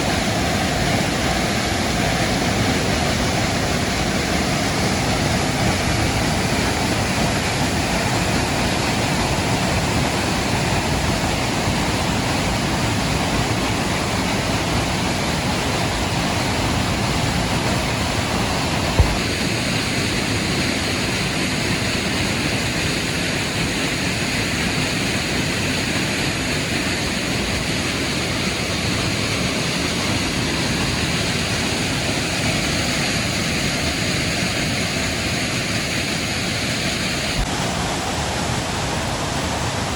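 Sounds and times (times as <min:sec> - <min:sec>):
waterfall rushing: 0:00.0 - 0:39.9
brief low thump: 0:19.0 - 0:19.3.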